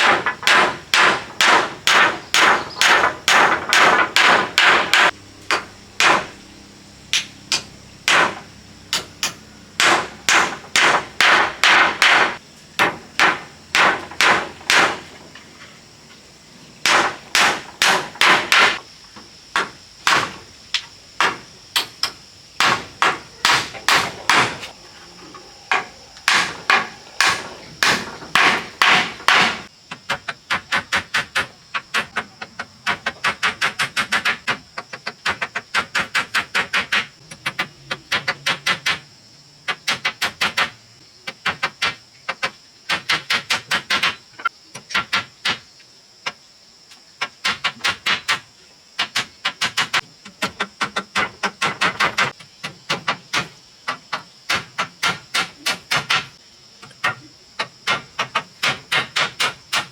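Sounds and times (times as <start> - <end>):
ringing hammer blows: 25.7 - 29.6.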